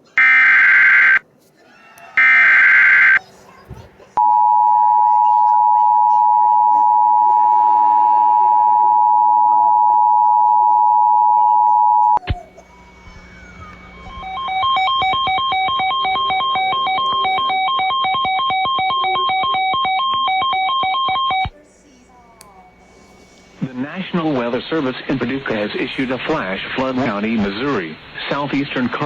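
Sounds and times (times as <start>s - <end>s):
two-tone alarm: 0.1s - 1.2s, 2.2s - 3.2s, 13.6s - 21.5s
fast-trilling electronic ringing: 14.0s - 21.5s.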